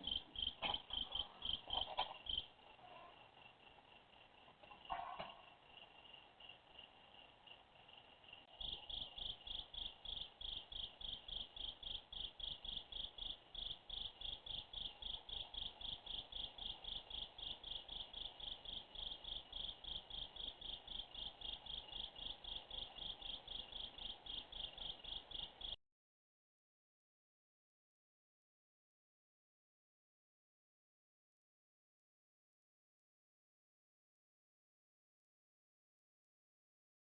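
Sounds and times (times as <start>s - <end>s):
cricket chirping: 0.0s - 25.8s.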